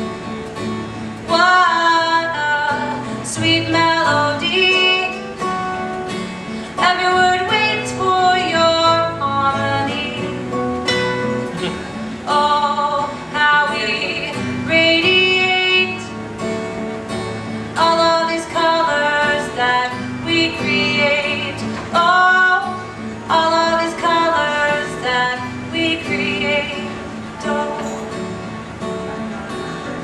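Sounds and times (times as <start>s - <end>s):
strummed acoustic guitar: 0.0s - 30.0s
woman singing: 1.3s - 5.9s, 6.6s - 10.5s, 12.2s - 16.2s, 17.8s - 28.2s.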